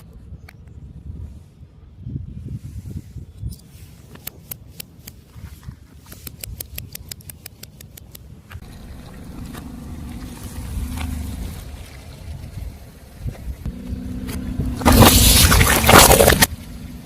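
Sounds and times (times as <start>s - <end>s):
car rumble: 8.4s - 17.0s
objects cracking under car tyre: 14.3s - 16.5s.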